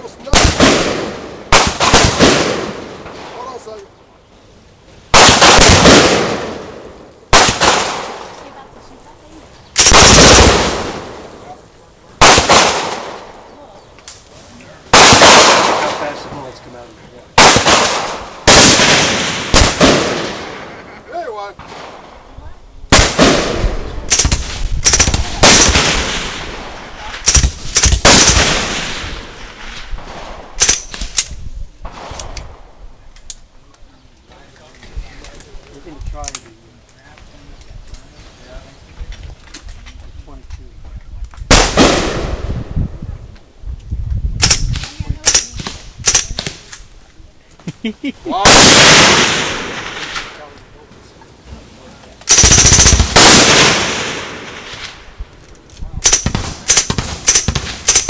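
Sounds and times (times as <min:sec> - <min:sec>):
submachine gun shots and bursts: 0:24.1 - 0:26.2, 0:27.2 - 0:29.0, 0:44.4 - 0:46.5, 0:52.3 - 0:54.9, 0:56.0 - 0:58.0.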